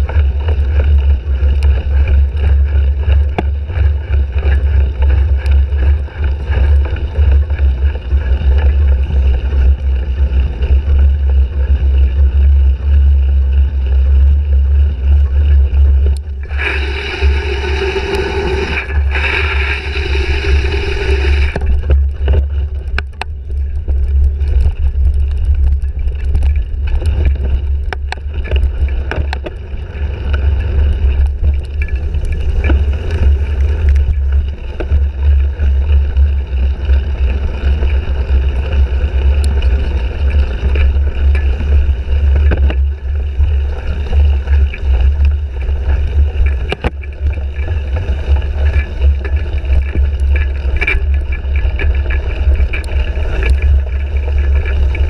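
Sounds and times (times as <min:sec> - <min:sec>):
bike rattling over rough ground: 0:00.0 - 0:55.0
wind rumble on microphone: 0:00.0 - 0:55.0
bright hiss: 0:16.4 - 0:21.6.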